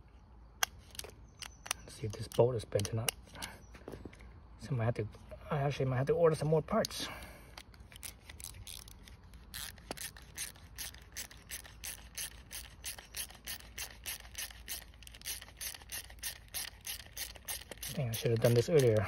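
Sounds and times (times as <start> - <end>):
ratchet wrench clicking: 6.8 - 19.0.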